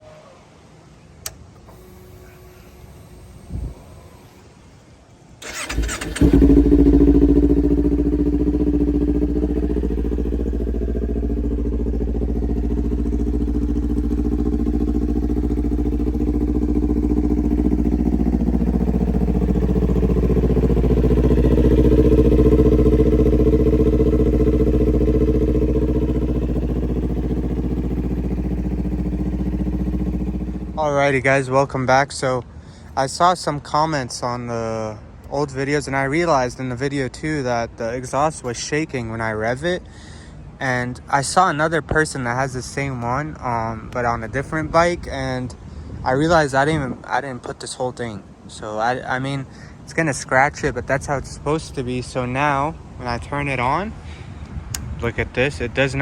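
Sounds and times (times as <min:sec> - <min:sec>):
motorcycle engine idling: 0:01.2 - 0:04.5, 0:05.4 - 0:31.2
motorcycle engine starting: 0:01.2 - 0:04.6, 0:05.4 - 0:31.2.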